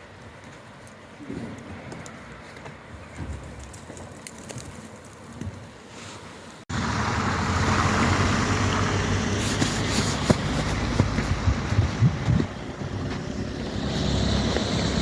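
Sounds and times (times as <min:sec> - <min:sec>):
steady rushing noise: 0:09.4 - 0:15.0.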